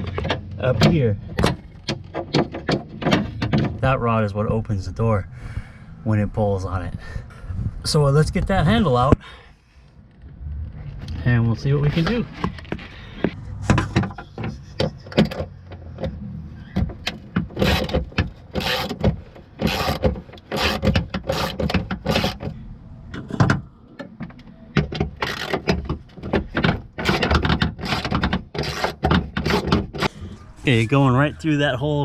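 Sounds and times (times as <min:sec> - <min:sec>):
hand tools clicking and knocking: 0:00.0 - 0:03.8, 0:13.7 - 0:16.2, 0:16.8 - 0:22.5, 0:23.1 - 0:30.1
ratchet turning: 0:17.6 - 0:19.0, 0:19.6 - 0:22.4.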